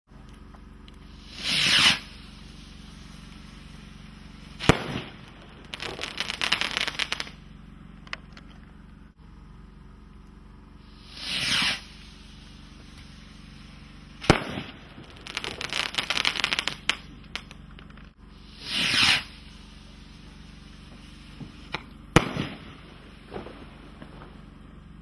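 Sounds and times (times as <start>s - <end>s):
firework crackling: 0.2s - 25.0s
firework bang: 1.1s - 7.6s, 11.0s - 24.6s
rocket launching whoosh: 1.2s - 7.4s, 10.9s - 17.1s, 18.4s - 20.2s, 21.1s - 24.4s.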